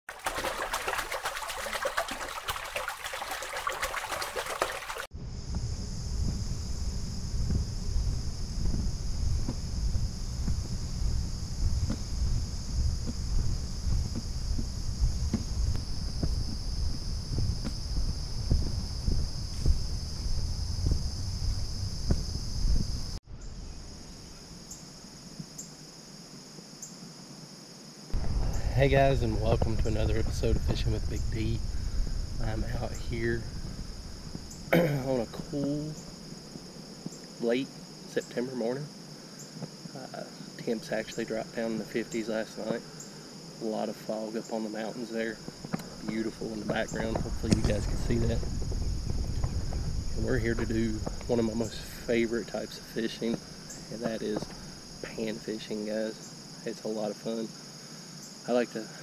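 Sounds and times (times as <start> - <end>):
water trickling and splashing: 0.0 - 5.1
crickets trilling: 0.1 - 59.0
high-pitched insect chorus: 0.1 - 59.0
wind rumble on microphone: 5.1 - 23.7, 28.2 - 36.7, 45.3 - 55.1.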